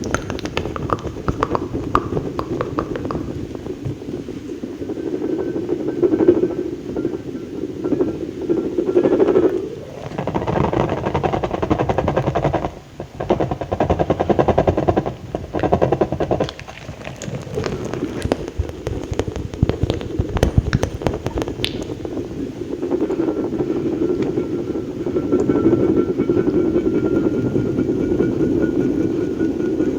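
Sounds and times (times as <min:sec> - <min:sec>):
mouth clicking and smacking: 0:00.0 - 0:04.0, 0:14.8 - 0:22.2.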